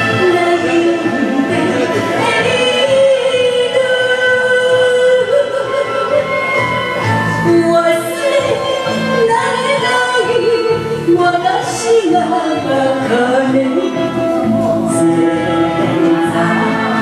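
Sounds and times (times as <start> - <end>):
karaoke backing track: 0.0 - 17.0
woman singing with vibrato: 0.0 - 17.0.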